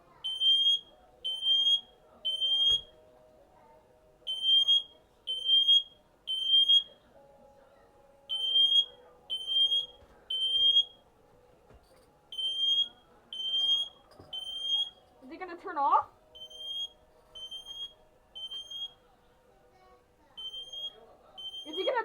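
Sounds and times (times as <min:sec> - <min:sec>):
smoke detector beeping: 0:00.2 - 0:03.0, 0:04.3 - 0:07.0, 0:08.3 - 0:11.0, 0:12.3 - 0:15.1, 0:16.4 - 0:19.0, 0:20.4 - 0:22.0.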